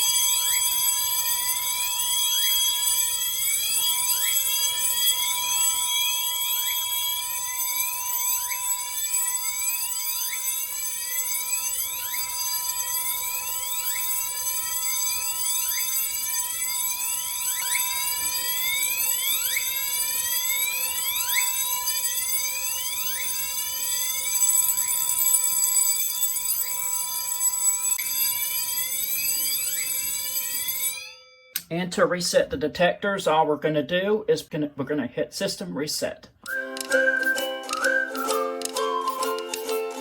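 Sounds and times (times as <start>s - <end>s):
fire alarm bell ringing: 0.0s - 31.6s.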